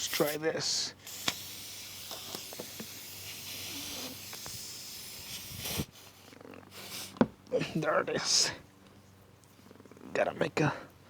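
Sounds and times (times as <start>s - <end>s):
air hissing from tire: 0.0s - 7.3s.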